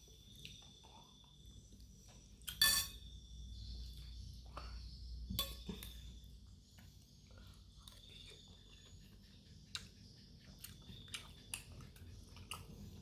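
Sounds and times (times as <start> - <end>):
cutlery clinking against bowl: 2.5 - 3.0.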